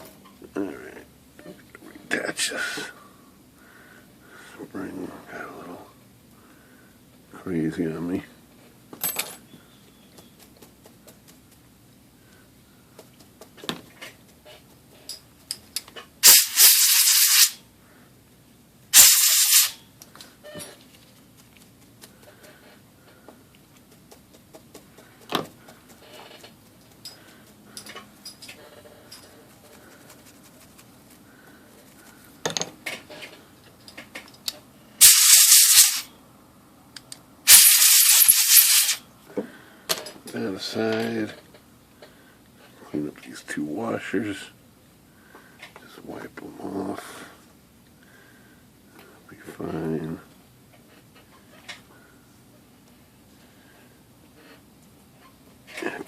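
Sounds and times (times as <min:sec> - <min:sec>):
small metal parts clinking: 0:09.0 - 0:09.5, 0:26.0 - 0:29.4, 0:37.5 - 0:39.0
pressurised spray hissing: 0:16.2 - 0:17.6, 0:18.9 - 0:19.8, 0:35.0 - 0:36.1, 0:37.5 - 0:39.0.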